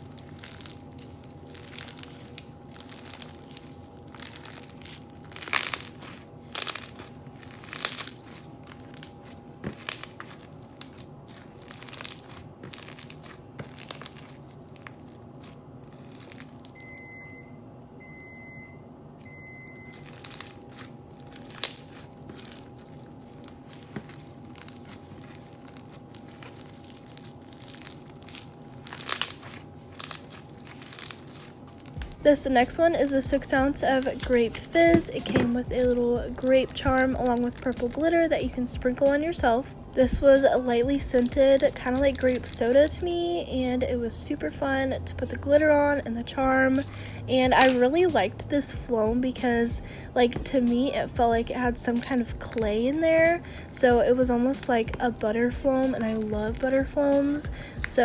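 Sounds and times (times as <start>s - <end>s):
slime crunching and crackling: 0.0s - 16.9s, 19.8s - 58.0s
short high beeps: 16.8s - 19.9s.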